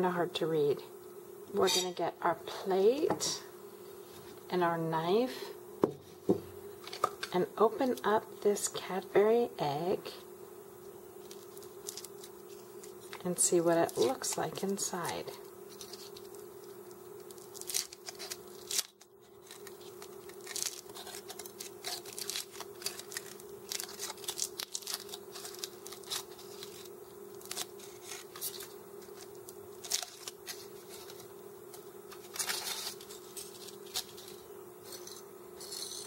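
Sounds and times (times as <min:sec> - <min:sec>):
foil wrapper crinkling: 0:11.2 - 0:35.1.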